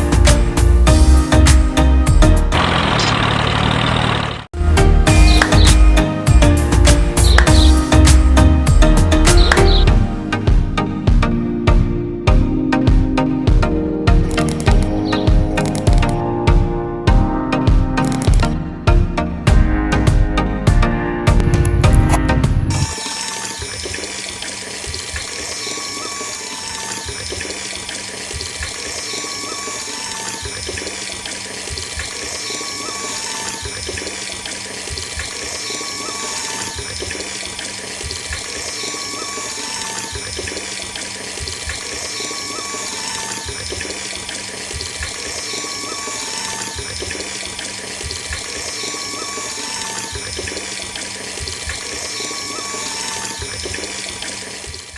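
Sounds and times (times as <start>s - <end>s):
water splashing: 21.4s - 54.9s
small pump motor humming: 22.8s - 54.9s.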